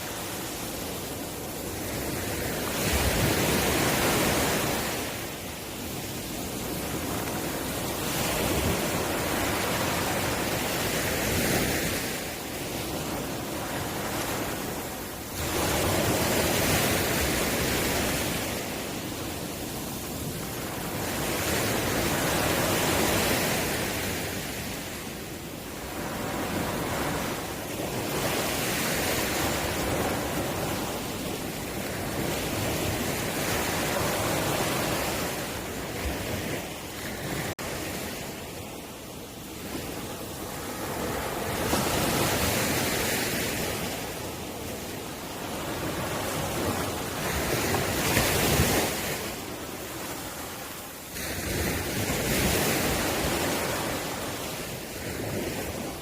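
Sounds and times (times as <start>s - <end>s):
ocean waves breaking on shore: 0.0s - 56.0s.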